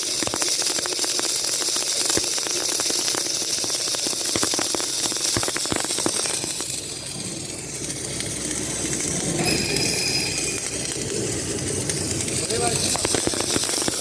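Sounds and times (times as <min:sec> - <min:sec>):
welding crackling and hissing: 0:00.0 - 0:14.0
machine rumble: 0:04.8 - 0:14.0
faint high whine: 0:06.3 - 0:14.0.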